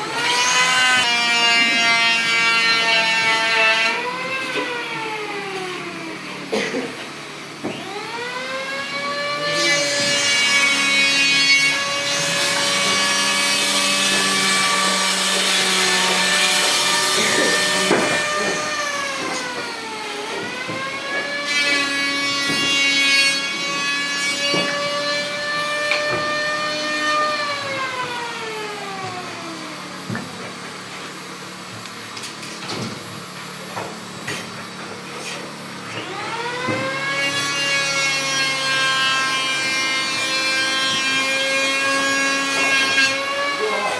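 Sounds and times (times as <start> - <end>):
power tool whining: 7.2 - 30.9, 31.8 - 43.9.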